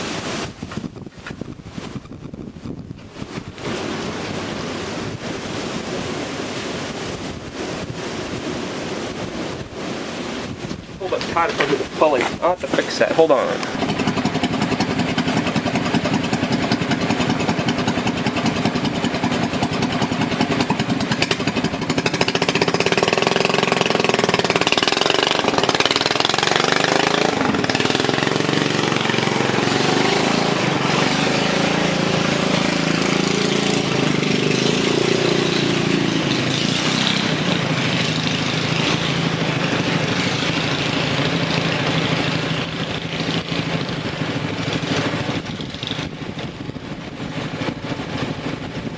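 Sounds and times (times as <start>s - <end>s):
small engine running roughly: 11.1s - 48.9s.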